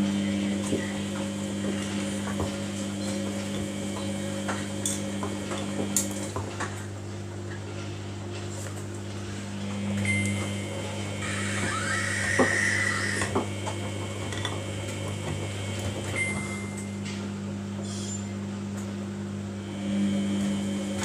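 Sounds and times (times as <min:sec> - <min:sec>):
washing machine motor hum: 0:00.0 - 0:21.0.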